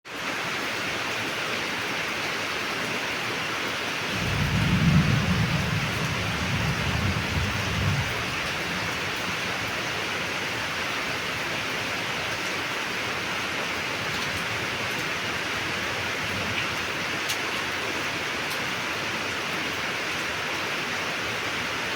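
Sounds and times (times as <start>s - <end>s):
heavy rain hissing: 0.3s - 21.9s
thunder rumble: 4.1s - 10.0s.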